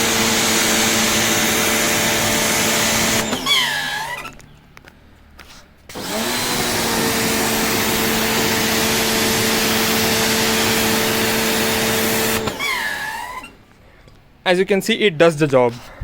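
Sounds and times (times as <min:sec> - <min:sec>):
pressure washer motor humming: 0:00.0 - 0:04.4, 0:05.9 - 0:13.7.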